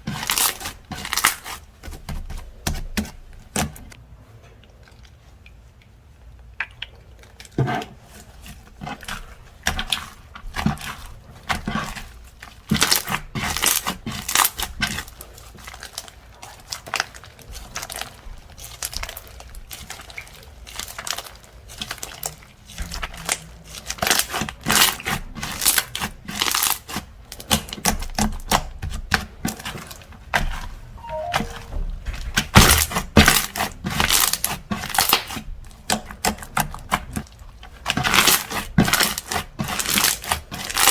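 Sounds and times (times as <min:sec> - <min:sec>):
slime squishing and crackling: 0:08.8 - 0:29.8.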